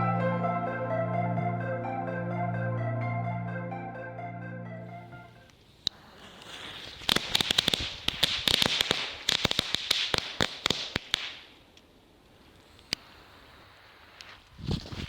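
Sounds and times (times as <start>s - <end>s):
firecrackers popping: 5.8s - 11.6s.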